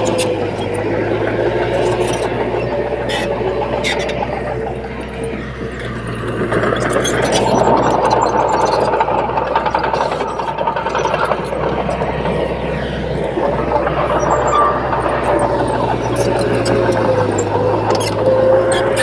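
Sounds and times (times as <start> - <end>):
diesel engine drone: 0.0 - 19.0
metallic clatter: 8.2 - 19.0.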